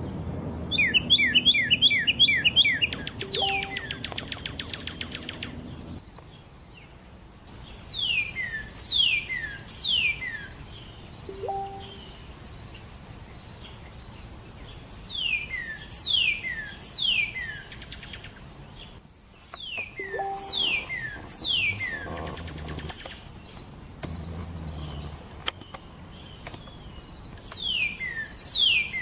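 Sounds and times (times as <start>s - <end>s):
bird whistling descending notes: 0.7s - 5.5s, 11.3s - 12.1s, 20.0s - 22.0s.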